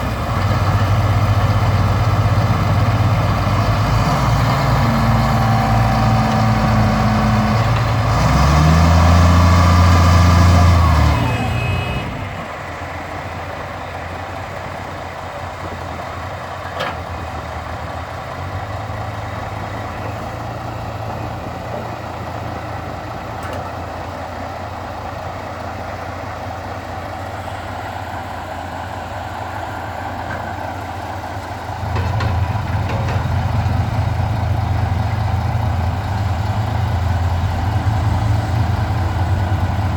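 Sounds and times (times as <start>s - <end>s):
heavy diesel engine revving: 0.0s - 12.9s, 27.2s - 39.9s.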